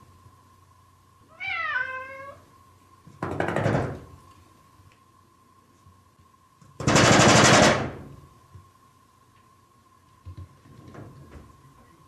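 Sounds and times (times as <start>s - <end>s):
faint steady hum: 0.0s - 12.0s
cat drumming on a door: 3.2s - 4.1s.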